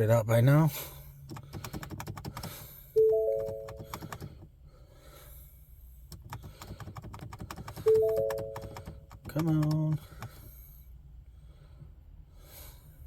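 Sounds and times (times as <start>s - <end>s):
three-note warning chime: 3.0s - 3.8s, 7.9s - 8.6s.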